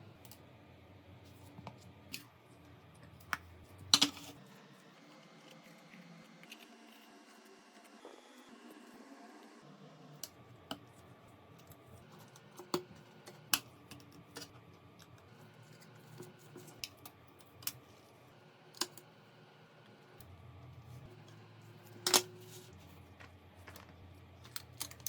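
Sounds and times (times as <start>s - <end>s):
small tools clicking and tapping: 23.2s - 25.0s.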